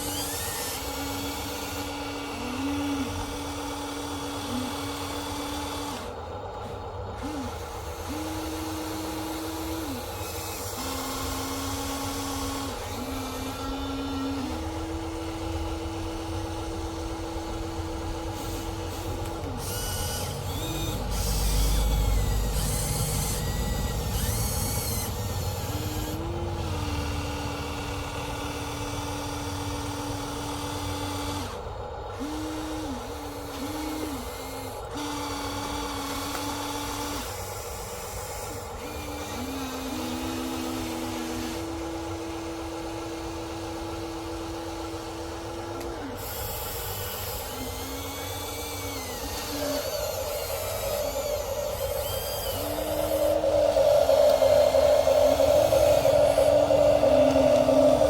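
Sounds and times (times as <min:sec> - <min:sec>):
small electric motors whining: 0:00.0 - 0:58.0
low rumble with rattling: 0:46.8 - 0:58.0.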